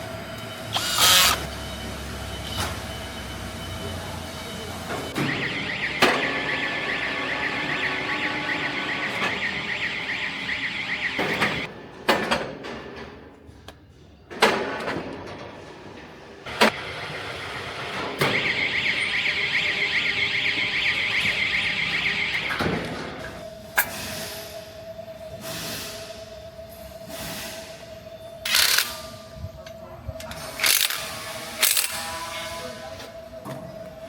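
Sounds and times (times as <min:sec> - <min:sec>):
electronic warning alarm warbling: 0:00.6 - 0:11.7, 0:18.2 - 0:23.4.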